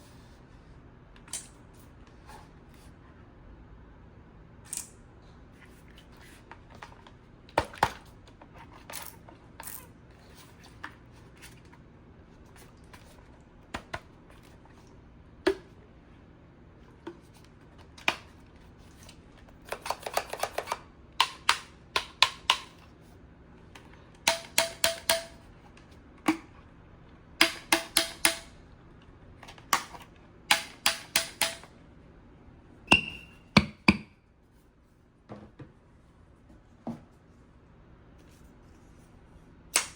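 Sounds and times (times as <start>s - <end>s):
short tone: 32.9s - 33.5s.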